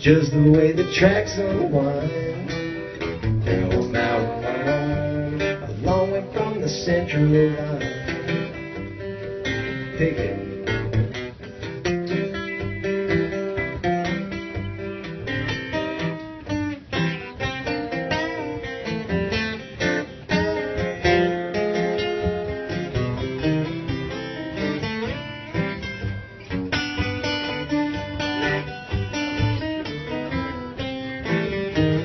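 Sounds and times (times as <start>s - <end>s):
fingerpicked acoustic guitar: 0.0s - 32.0s.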